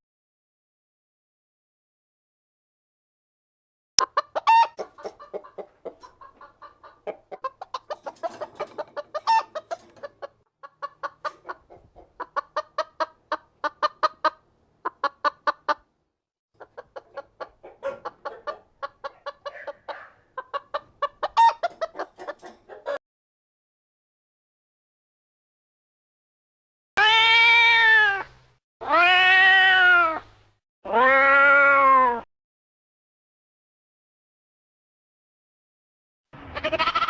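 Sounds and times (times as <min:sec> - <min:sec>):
chicken squawks: 0:04.0 - 0:15.8, 0:16.6 - 0:23.0, 0:36.4 - 0:37.0
chickens clucking: 0:04.0 - 0:15.9, 0:16.6 - 0:23.0.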